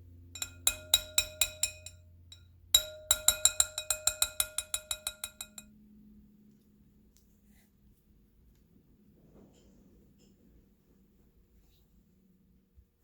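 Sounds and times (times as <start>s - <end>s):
utensil tapping glass bowl rim: 0.4s - 5.7s.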